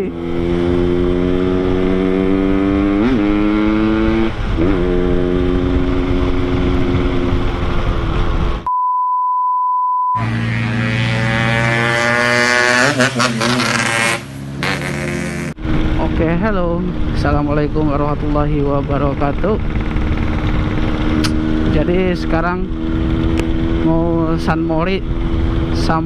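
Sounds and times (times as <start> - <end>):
steady high beep: 8.7 - 10.2.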